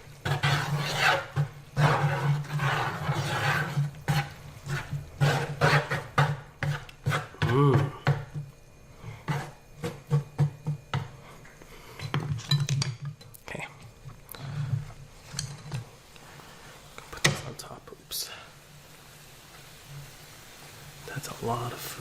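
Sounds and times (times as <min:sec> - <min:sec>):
utensil scraping skillet: 0:00.0 - 0:13.2, 0:14.3 - 0:17.4.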